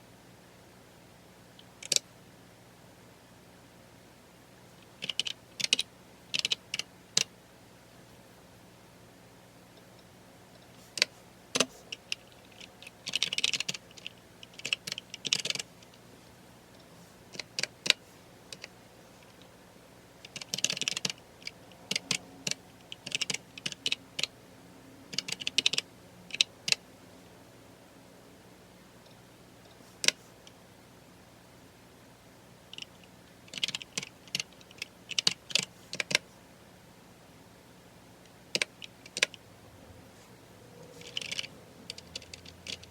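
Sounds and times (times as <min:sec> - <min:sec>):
typing on a computer keyboard: 0:01.8 - 0:02.1, 0:05.0 - 0:07.3, 0:10.9 - 0:16.0, 0:17.3 - 0:18.7, 0:20.2 - 0:24.3, 0:25.1 - 0:26.8, 0:30.0 - 0:30.2, 0:32.7 - 0:36.2, 0:38.5 - 0:39.4, 0:41.0 - 0:42.9.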